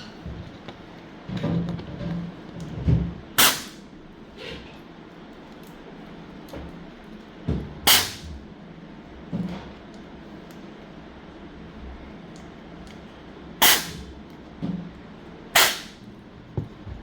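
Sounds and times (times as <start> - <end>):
dull knock: 16.6 - 17.0.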